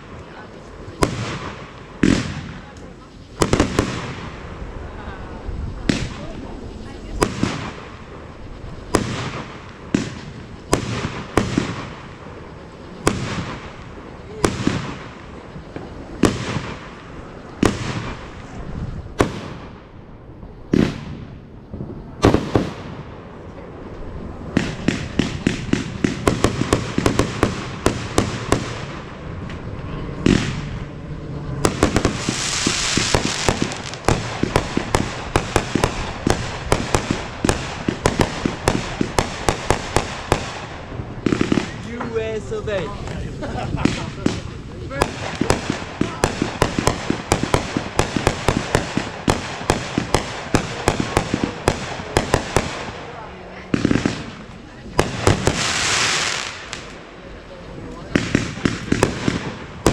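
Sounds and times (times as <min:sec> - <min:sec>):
firework bangs: 0:00.0 - 0:59.9
firework crackling pops: 0:00.0 - 0:59.9
loud hiss: 0:24.1 - 0:59.9.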